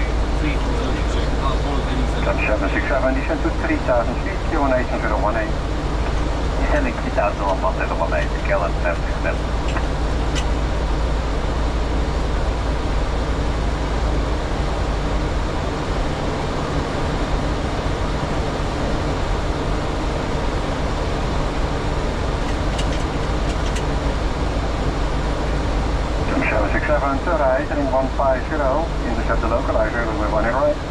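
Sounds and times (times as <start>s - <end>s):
airflow and air conditioning rush: 0.0s - 30.9s
low engine drone: 0.0s - 30.9s.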